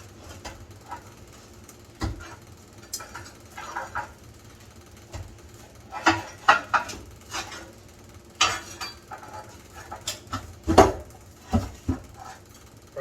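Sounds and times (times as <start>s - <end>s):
metal tools clanking: 8.4s - 10.8s.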